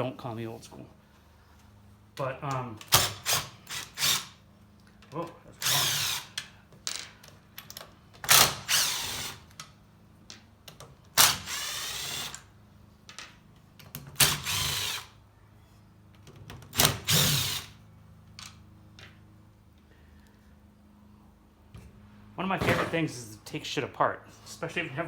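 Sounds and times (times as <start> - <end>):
power drill motor running: 2.8 - 4.4, 5.6 - 6.4, 8.3 - 9.6, 11.2 - 12.5, 14.2 - 15.2, 16.8 - 17.8.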